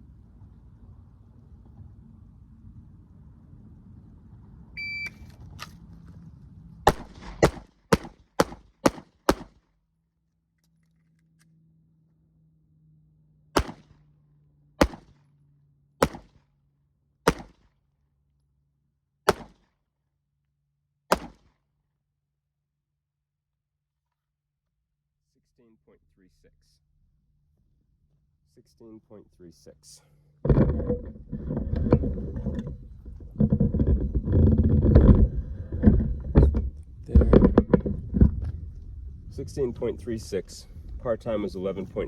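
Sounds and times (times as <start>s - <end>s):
shot timer beep: 4.8s - 5.2s
pistol shots: 6.9s - 9.6s, 13.6s - 14.0s, 14.8s - 15.2s, 16.0s - 16.4s, 17.3s - 17.6s, 19.3s - 19.6s, 21.1s - 21.5s.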